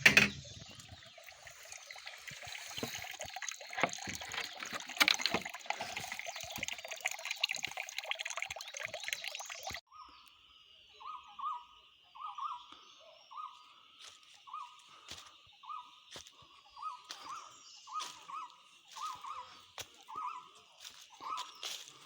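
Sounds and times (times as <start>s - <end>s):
running water: 0.0s - 9.8s.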